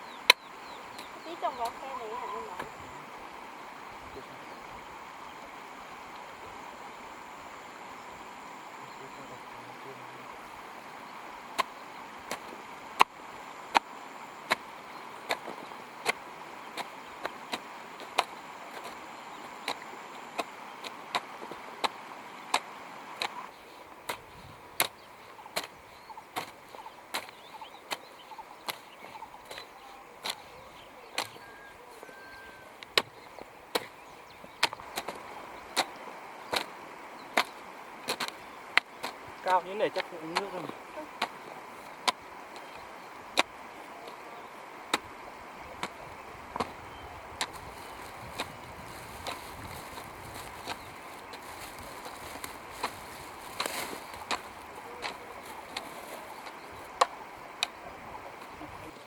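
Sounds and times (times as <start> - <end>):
hoe striking soil: 11.5 - 23.4, 24.0 - 30.5, 31.2 - 43.6, 47.4 - 57.8.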